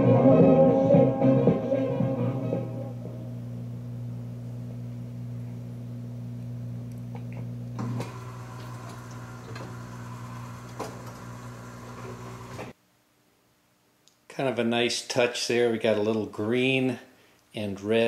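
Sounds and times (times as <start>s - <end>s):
steady motor hum: 3.0s - 12.8s
record changer clunk: 7.2s - 12.7s.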